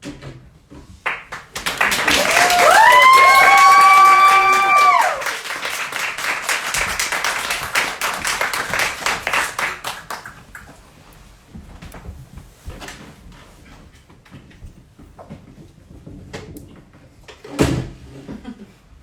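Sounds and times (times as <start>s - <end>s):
audience applauding: 1.1s - 10.8s
person whooping in crowd: 1.8s - 6.0s.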